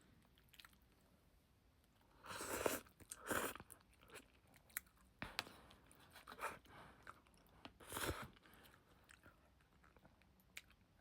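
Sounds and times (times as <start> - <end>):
person chewing noodles: 0.2 - 0.9, 2.2 - 11.0.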